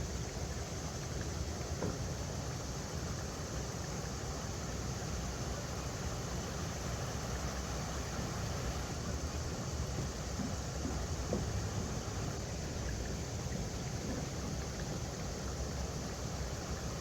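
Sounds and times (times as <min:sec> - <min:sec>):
river water flowing over rocks: 0:00.0 - 0:17.0.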